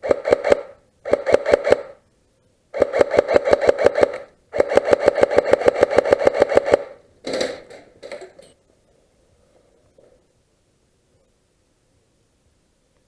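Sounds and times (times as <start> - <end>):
airsoft gun automatic fire: 0.0 - 2.0, 2.7 - 7.8.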